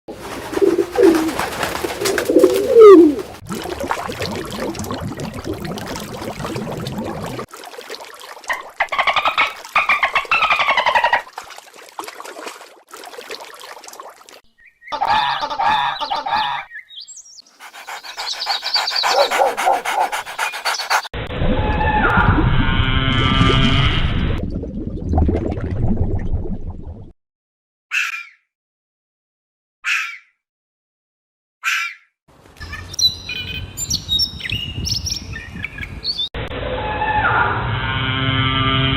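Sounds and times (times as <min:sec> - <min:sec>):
bird-like animal calls: 0:02.3 - 0:03.3, 0:17.4 - 0:21.1.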